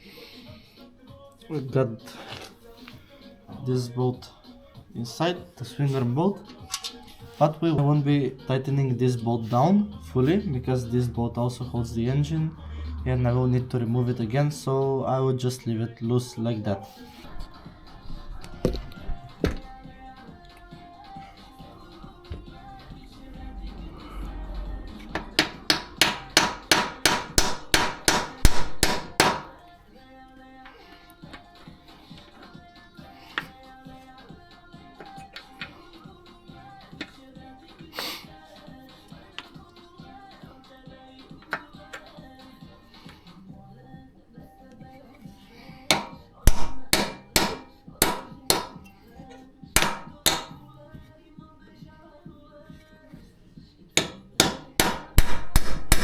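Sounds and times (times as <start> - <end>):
hammer striking metal: 25.0 - 29.6, 45.9 - 48.9, 49.8 - 50.6, 54.0 - 56.0.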